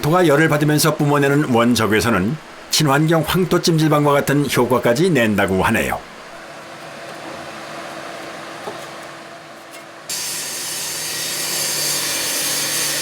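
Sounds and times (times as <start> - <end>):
power tool motor hum: 10.1 - 13.0.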